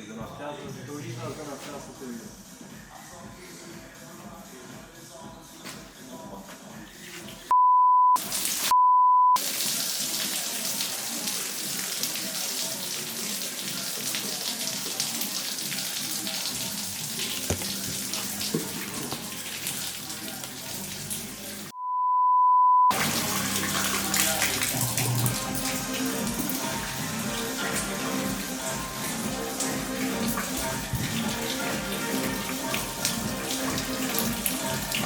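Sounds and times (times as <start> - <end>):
short loud beeps: 7.5 - 9.4, 21.8 - 22.9
coolant draining and splashing: 9.4 - 21.7, 22.9 - 35.0.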